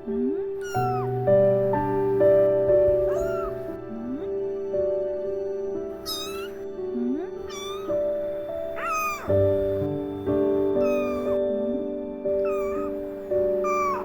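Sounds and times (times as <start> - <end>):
soft background music: 0.0 - 14.0
kitten meowing: 0.6 - 1.2, 2.9 - 4.3, 6.0 - 9.9, 10.6 - 14.0.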